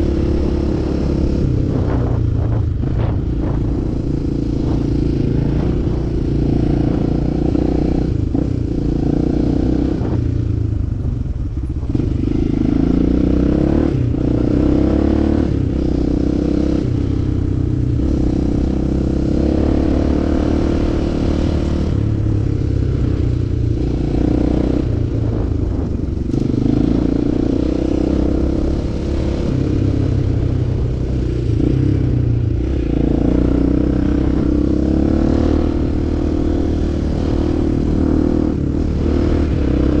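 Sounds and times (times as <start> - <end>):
motorcycle engine revving: 0.0 - 40.0.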